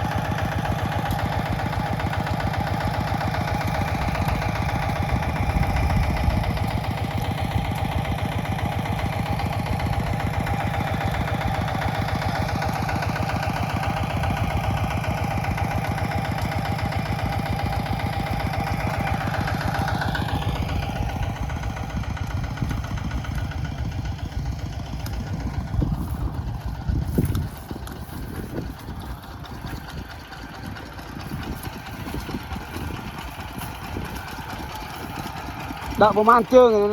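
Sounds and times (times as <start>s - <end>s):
small tractor engine running: 0.0s - 36.9s.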